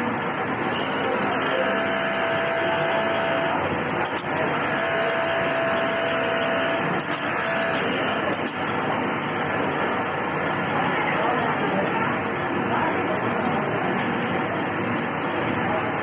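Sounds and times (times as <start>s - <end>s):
din of other machines: 0.0s - 16.0s
sewing machine motor whine: 0.6s - 8.4s.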